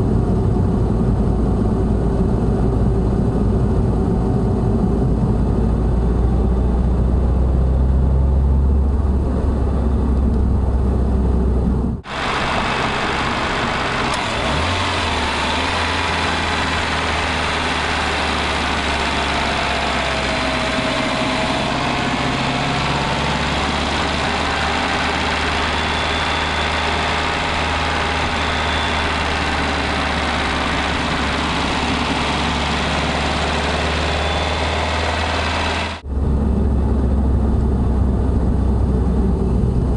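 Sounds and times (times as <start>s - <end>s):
road and drivetrain hum: 0.0s - 39.9s
car engine idling: 8.4s - 39.9s.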